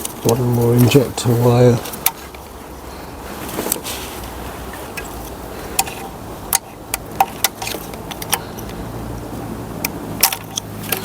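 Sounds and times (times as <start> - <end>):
plastic connectors clicking: 4.9 - 8.8.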